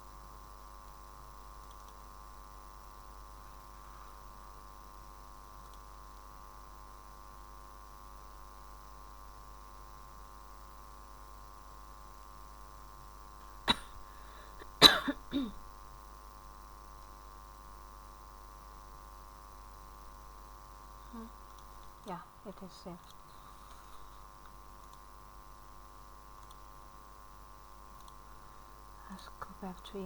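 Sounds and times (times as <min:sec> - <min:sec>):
electrical hum: 0:00.0 - 0:30.0
person coughing: 0:13.7 - 0:15.6.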